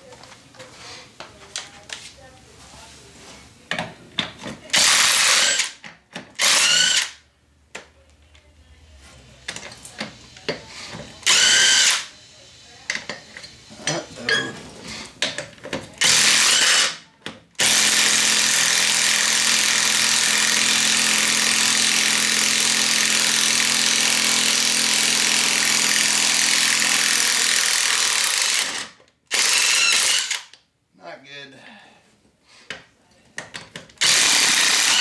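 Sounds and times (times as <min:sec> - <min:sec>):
power drill running: 0:04.7 - 0:05.8, 0:06.4 - 0:07.2, 0:11.2 - 0:12.1, 0:16.0 - 0:17.0, 0:17.6 - 0:30.6, 0:34.0 - 0:35.0.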